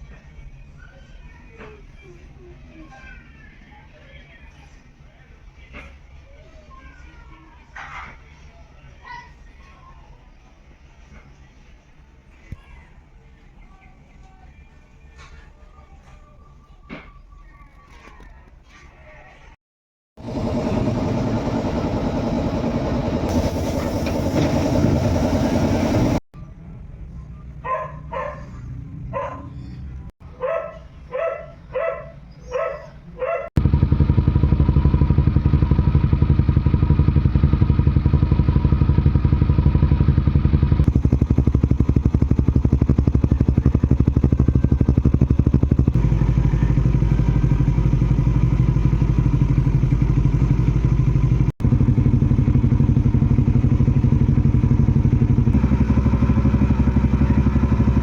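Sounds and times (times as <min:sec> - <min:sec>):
scooter engine running: 0:20.2 - 0:26.2, 0:33.6 - 0:58.0
dog barking: 0:27.6 - 0:29.6, 0:30.3 - 0:33.5.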